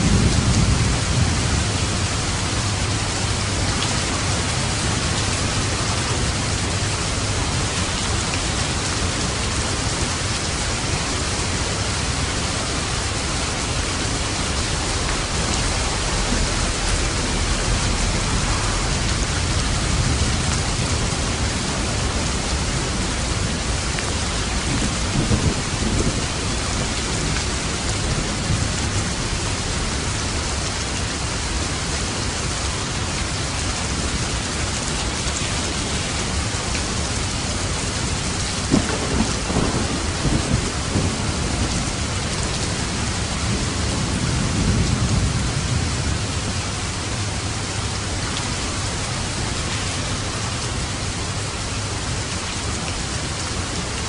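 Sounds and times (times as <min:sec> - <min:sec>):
thunder rumbling: 0:00.0 - 0:07.7, 0:11.6 - 0:30.8, 0:38.0 - 0:46.8
steady rain falling: 0:00.0 - 0:54.0.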